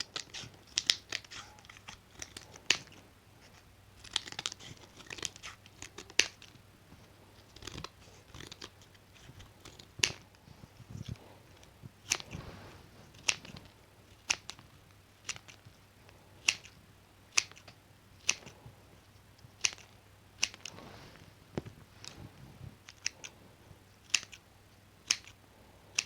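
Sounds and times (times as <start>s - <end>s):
scissors snipping: 0.0s - 3.0s, 4.0s - 6.5s, 7.4s - 10.4s, 12.0s - 12.4s, 13.2s - 14.6s, 15.2s - 15.6s, 16.4s - 18.6s, 19.5s - 20.7s, 22.8s - 23.4s, 24.0s - 24.4s, 25.0s - 26.0s
material rustling: 12.1s - 13.7s, 20.6s - 22.8s.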